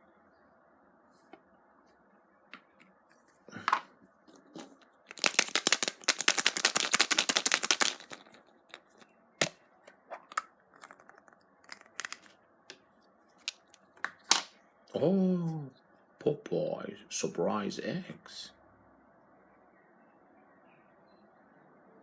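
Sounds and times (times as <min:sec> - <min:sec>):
foil wrapper crinkling and tearing: 0:05.1 - 0:08.9, 0:10.8 - 0:12.3.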